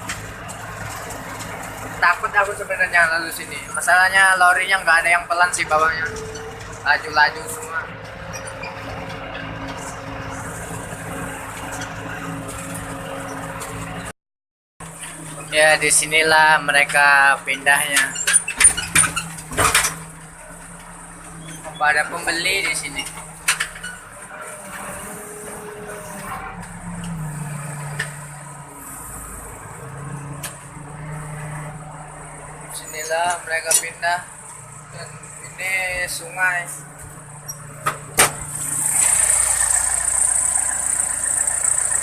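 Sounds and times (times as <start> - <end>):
engine humming: 0.0 - 14.1, 14.8 - 42.0
road and tyre noise: 0.0 - 14.2, 14.8 - 42.0
vehicle engine running: 34.2 - 42.0.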